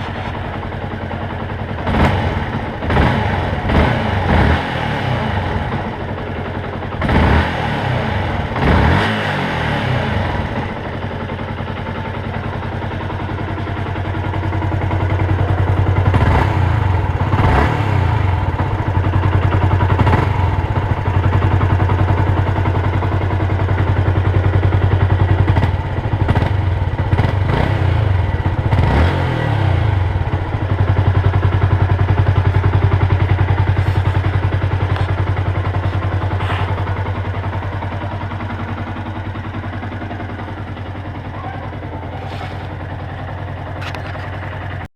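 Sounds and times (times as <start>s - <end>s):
motorcycle engine revving and idling: 0.0s - 44.9s.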